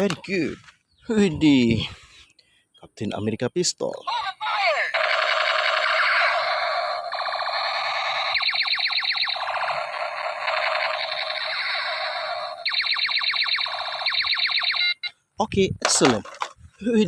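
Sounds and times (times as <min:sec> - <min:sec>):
toy gun siren-like tone: 0:04.9 - 0:15.1
toy gun zapping chirps: 0:04.9 - 0:15.1.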